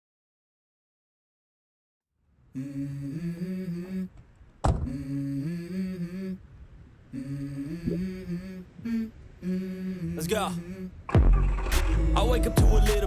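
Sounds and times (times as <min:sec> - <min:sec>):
hummed vocal melody: 0:02.5 - 0:13.0.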